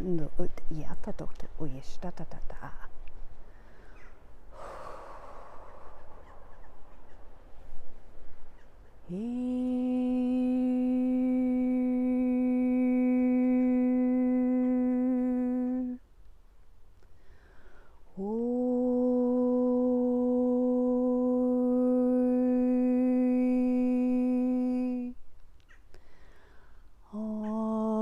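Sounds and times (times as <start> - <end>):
person humming a long note: 9.1 - 16.0, 18.1 - 25.2, 27.1 - 28.0.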